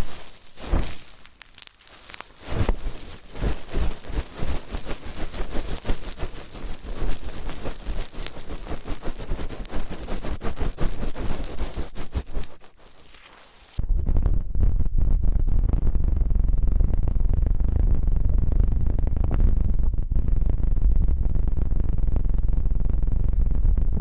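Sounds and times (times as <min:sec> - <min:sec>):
hands rubbing microphone: 0:00.0 - 0:13.8.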